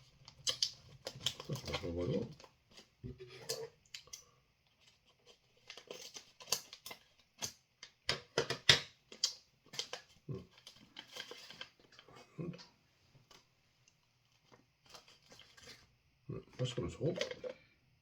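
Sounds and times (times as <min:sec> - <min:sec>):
packaging crinkling and crackling: 0:00.0 - 0:07.6, 0:09.1 - 0:12.1, 0:14.2 - 0:15.9.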